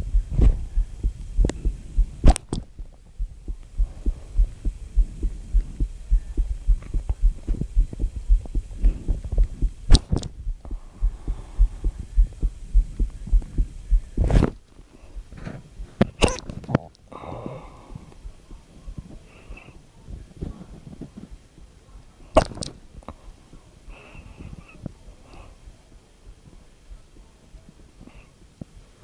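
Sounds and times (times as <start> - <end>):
fast low thumps: 0.0 - 14.6
person hiccuping: 16.2 - 16.5.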